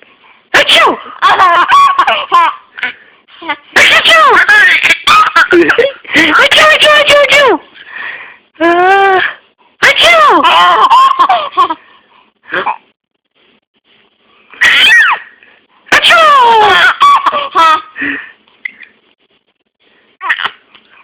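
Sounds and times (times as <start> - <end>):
baby laughing: 1.1 - 3.6, 4.2 - 6.4, 10.3 - 11.8, 16.4 - 18.0, 20.2 - 20.6.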